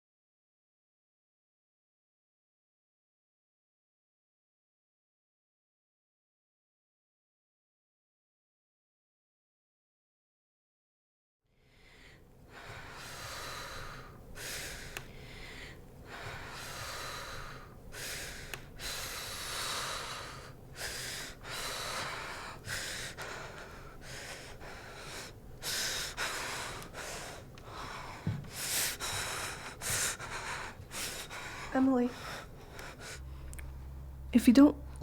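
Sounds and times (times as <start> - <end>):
person breathing heavily: 11.7 - 34.2
person gasping: 18.0 - 33.8.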